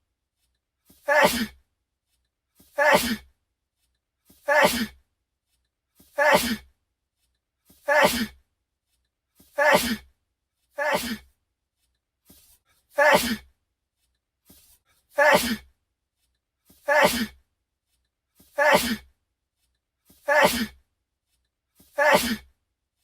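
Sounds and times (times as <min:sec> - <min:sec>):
man sneezing: 0:01.0 - 0:01.6, 0:02.8 - 0:03.2, 0:04.5 - 0:05.0, 0:06.2 - 0:06.6, 0:07.9 - 0:08.4, 0:09.6 - 0:10.0, 0:10.8 - 0:11.2, 0:13.0 - 0:13.4, 0:15.2 - 0:15.6, 0:16.9 - 0:17.4, 0:18.6 - 0:19.1, 0:20.2 - 0:20.8, 0:22.0 - 0:22.4.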